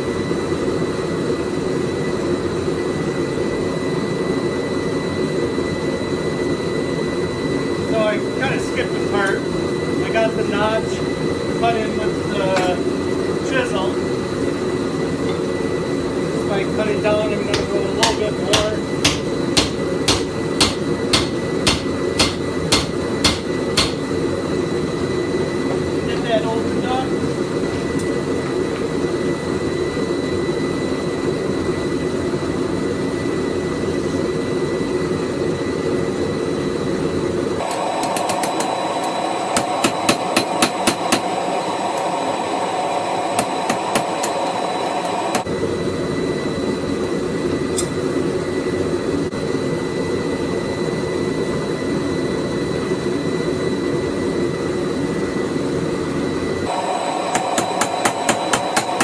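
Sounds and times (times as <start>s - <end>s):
forge running: 1.2s - 59.0s
hammer blows on anvil: 17.5s - 24.1s.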